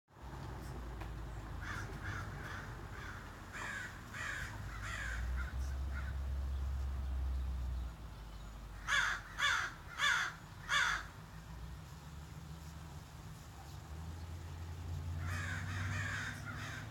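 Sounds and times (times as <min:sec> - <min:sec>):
crow cawing: 0:01.6 - 0:06.2, 0:08.8 - 0:11.2, 0:15.2 - 0:16.9.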